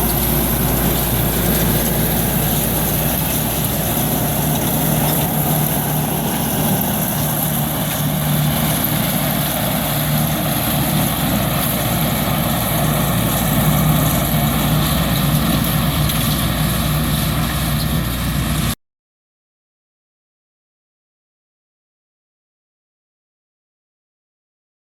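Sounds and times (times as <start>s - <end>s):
atv engine running: 0.0s - 18.8s.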